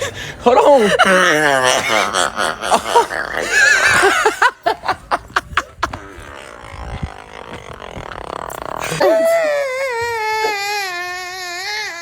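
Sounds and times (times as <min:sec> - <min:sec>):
person laughing high-pitched: 0:00.5 - 0:06.2.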